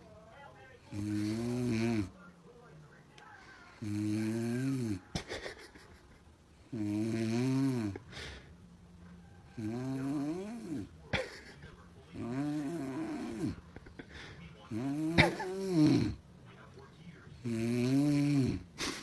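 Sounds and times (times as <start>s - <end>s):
droning snores: 0.9s - 2.2s, 3.7s - 5.1s, 6.7s - 8.4s, 9.4s - 10.9s, 12.1s - 13.6s, 14.7s - 16.2s, 17.3s - 18.8s.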